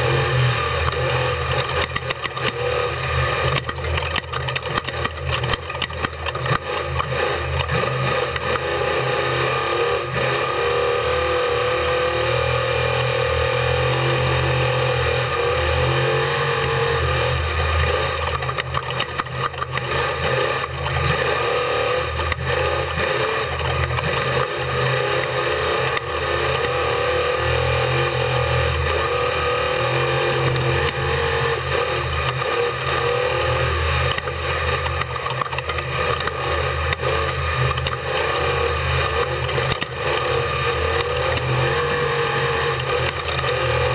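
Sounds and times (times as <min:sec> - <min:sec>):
truck engine running hard: 0:00.0 - 0:43.9
truck knocking and rattling: 0:03.4 - 0:07.8.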